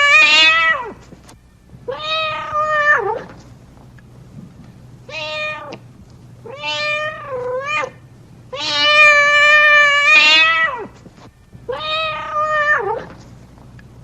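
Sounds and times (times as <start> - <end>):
cat meowing: 0.0 - 1.0, 1.9 - 3.3, 5.1 - 5.8, 6.4 - 10.9, 11.7 - 13.2.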